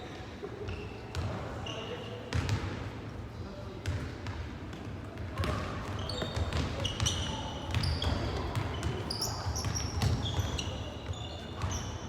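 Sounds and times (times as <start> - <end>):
sneaker squeaks: 0.0 - 2.6, 5.4 - 12.0.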